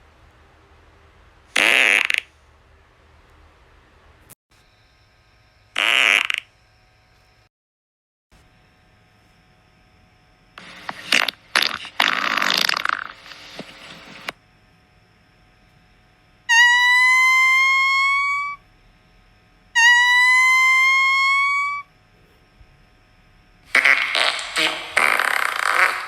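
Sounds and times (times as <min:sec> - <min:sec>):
sputtering crackly fart: 0:01.6 - 0:02.3, 0:05.8 - 0:06.5, 0:10.6 - 0:14.3, 0:23.7 - 0:26.0
high-pitched squeaky toots: 0:10.6 - 0:14.3, 0:16.5 - 0:18.6, 0:19.8 - 0:21.8, 0:23.7 - 0:26.0.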